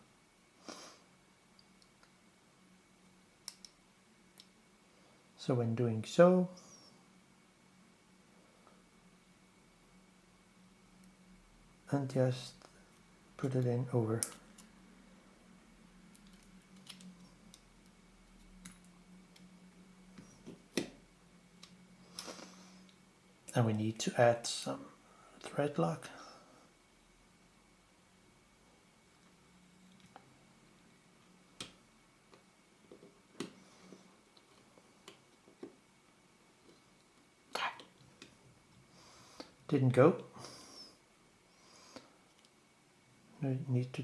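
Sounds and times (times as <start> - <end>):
small metal parts clicking: 16.1 - 19.4.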